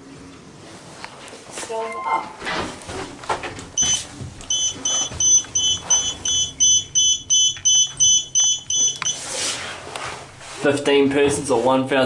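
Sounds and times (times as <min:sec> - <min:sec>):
rapid short high beeps: 0:03.8 - 0:09.2.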